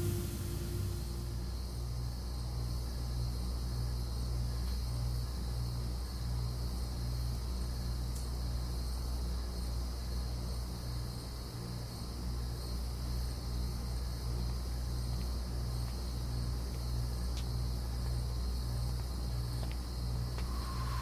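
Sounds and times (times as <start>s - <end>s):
low pulsing hum: 0.0s - 2.9s, 13.7s - 21.0s
crickets chirping: 0.0s - 21.0s.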